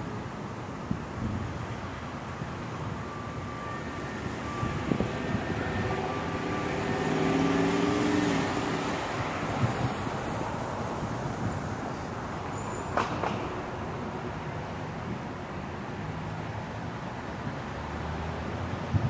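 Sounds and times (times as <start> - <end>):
city background rumble: 0.0 - 19.0
passing vehicle engine: 3.0 - 12.1, 16.0 - 19.0.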